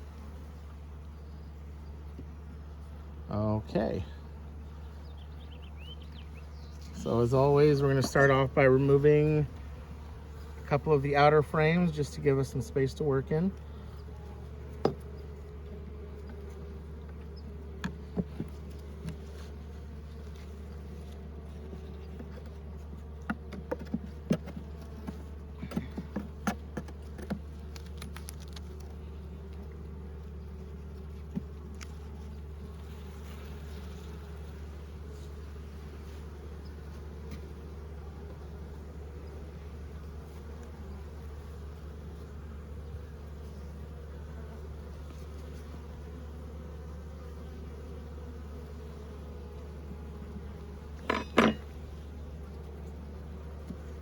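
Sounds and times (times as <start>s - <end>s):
honeybees buzzing: 0.0s - 54.0s
wooden hive frames knocking: 14.8s - 15.2s, 17.0s - 19.2s, 23.2s - 27.5s.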